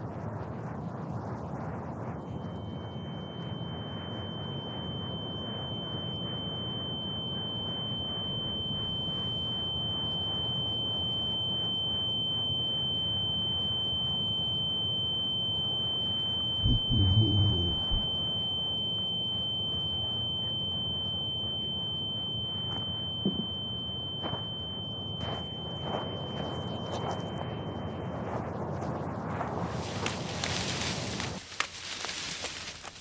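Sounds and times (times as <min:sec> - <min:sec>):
faint high whine: 0:00.0 - 0:31.4
high-pitched electronic tone: 0:16.6 - 0:18.1
low noisy rumble: 0:16.6 - 0:18.1.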